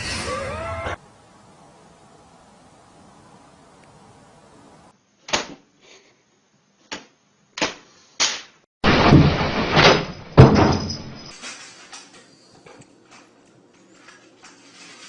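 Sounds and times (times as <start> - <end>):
clattering bang and rattle: 8.8 - 15.0.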